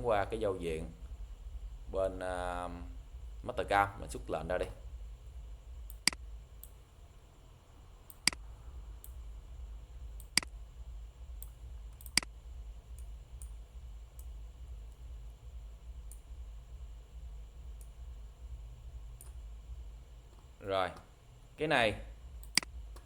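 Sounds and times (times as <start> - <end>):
low steady hum: 0.0 - 23.0
computer mouse clicking: 5.9 - 6.8, 8.1 - 9.2, 10.2 - 10.6, 11.4 - 12.4, 16.1 - 16.3, 17.7 - 18.0, 19.2 - 19.4, 22.4 - 23.0.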